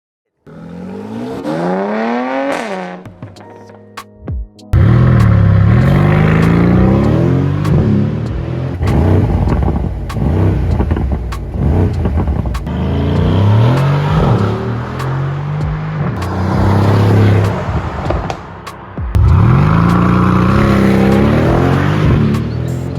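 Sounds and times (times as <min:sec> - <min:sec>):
car exhaust revving: 0:04.8 - 0:22.9
sharp exhaust cracks: 0:04.8 - 0:22.9.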